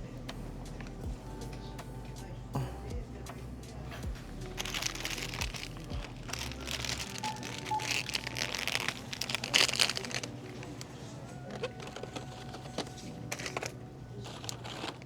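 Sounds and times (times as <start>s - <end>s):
plastic packaging crinkling: 4.2s - 15.0s.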